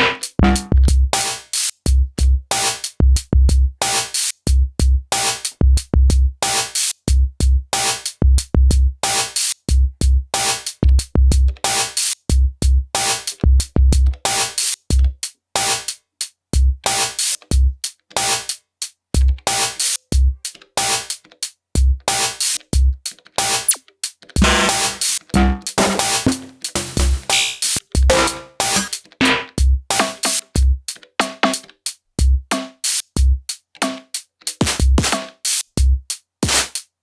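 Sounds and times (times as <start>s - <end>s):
electronic drum pattern: 0.0s - 1.0s, 24.4s - 30.4s, 34.6s - 35.6s, 36.4s - 36.8s.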